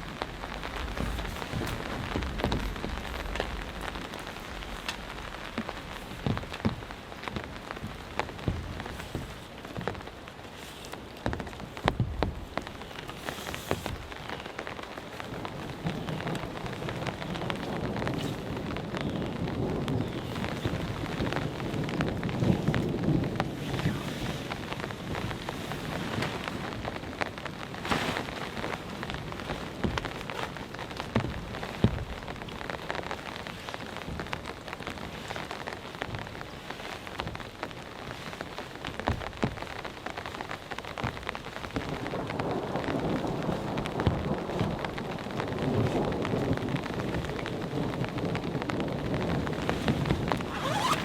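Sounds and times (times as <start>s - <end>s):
thunder rumbling: 0.0s - 36.5s, 38.7s - 51.0s
raindrops ticking: 0.0s - 51.0s
steady rain: 0.0s - 51.0s.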